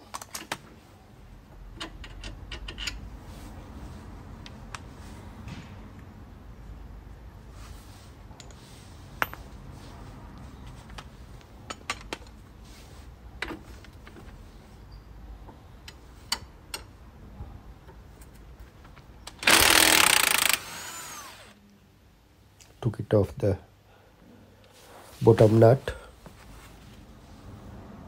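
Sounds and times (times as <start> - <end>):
power tool spinning off nut: 19.4 - 21.6.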